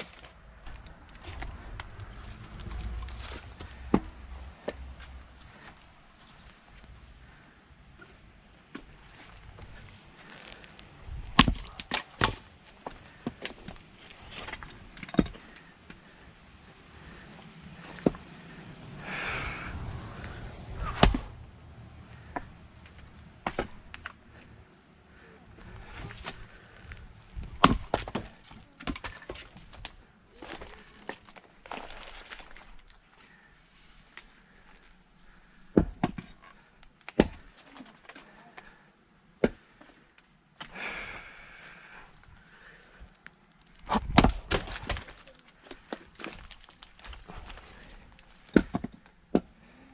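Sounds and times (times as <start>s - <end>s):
axe splitting firewood: 10.2s - 16.2s, 17.0s - 21.5s, 22.2s - 24.4s, 25.6s - 33.0s, 35.4s - 38.8s, 39.4s - 39.9s, 43.7s - 49.6s
axe striking a log: 11.3s - 12.4s, 20.8s - 21.4s, 27.5s - 28.2s, 37.1s - 37.5s, 43.9s - 45.1s
heavy breath: 14.4s - 23.1s, 23.7s - 27.5s, 37.4s - 43.2s.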